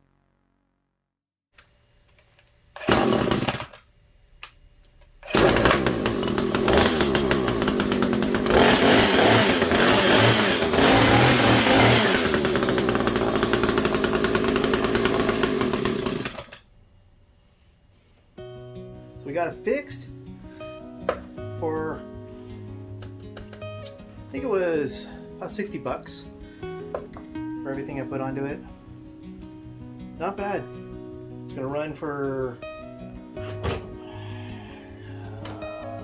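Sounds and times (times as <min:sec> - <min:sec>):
hedge trimmer engine starting and running: 0:02.8 - 0:03.8, 0:05.2 - 0:16.7.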